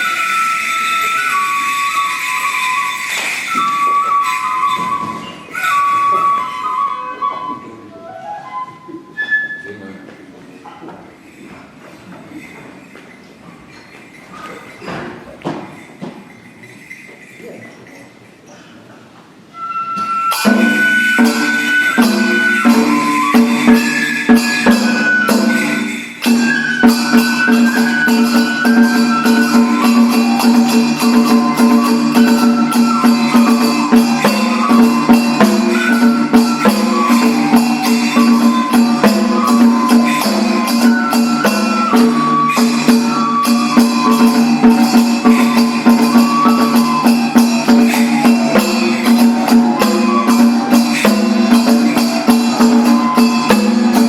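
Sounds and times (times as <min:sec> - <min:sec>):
high flute melody: 0:00.0 - 0:10.2, 0:19.5 - 0:54.0
jingling percussion: 0:00.0 - 0:18.7, 0:19.5 - 0:54.0
steady drumming: 0:20.1 - 0:54.0.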